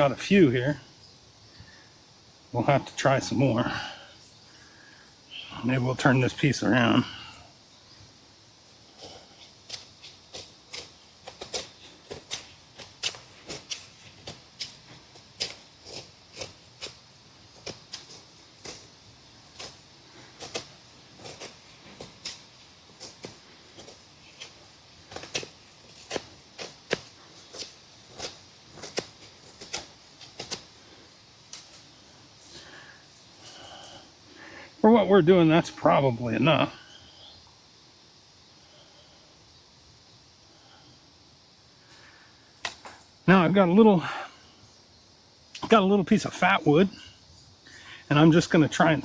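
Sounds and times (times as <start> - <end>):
knife scraping wood: 8.7 - 34.0.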